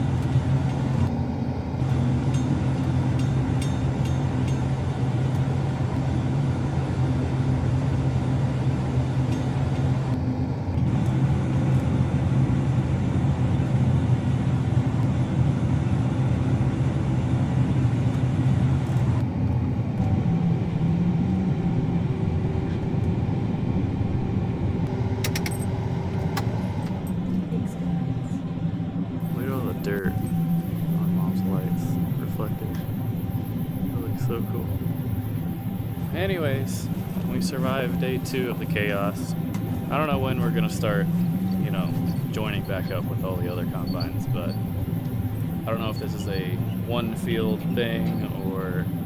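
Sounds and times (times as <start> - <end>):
farm machine engine humming: 20.0 - 49.0.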